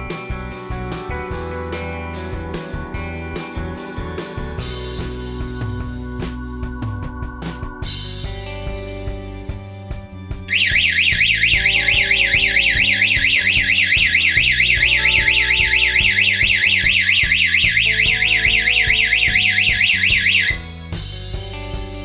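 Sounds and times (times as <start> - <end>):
background music with a beat: 0.0 - 22.0
alarm siren warbling wail: 10.5 - 20.6.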